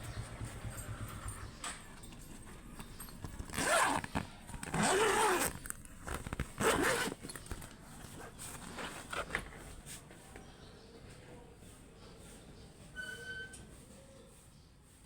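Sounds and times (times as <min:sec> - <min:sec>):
short zipping rasps: 0:03.5 - 0:07.3.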